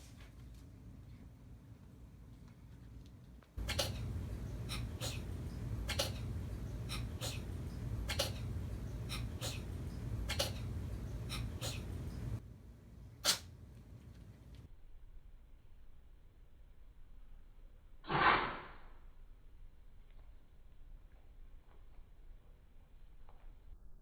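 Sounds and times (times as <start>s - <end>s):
cat sneezing: 3.6s - 6.3s, 6.9s - 12.3s, 13.2s - 13.5s.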